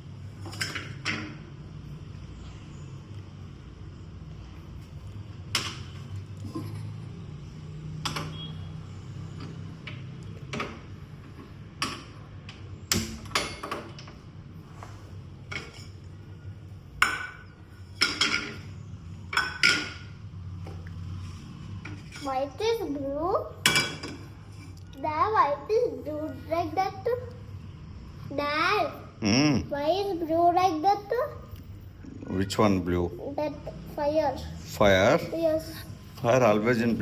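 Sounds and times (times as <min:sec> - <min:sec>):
utensils and dishes clinking: 0:00.4 - 0:01.4, 0:05.6 - 0:07.2, 0:15.5 - 0:16.2, 0:17.0 - 0:20.2, 0:23.6 - 0:24.8.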